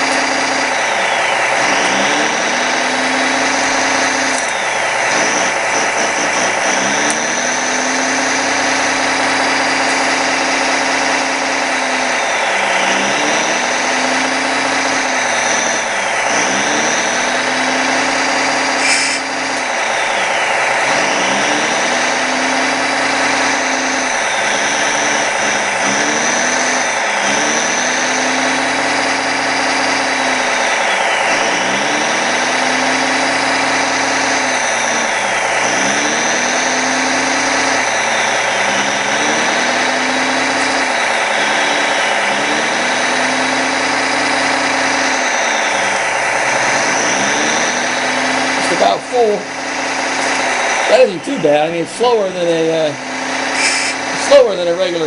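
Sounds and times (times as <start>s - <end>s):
diesel engine sound revving: 0.0s - 55.0s.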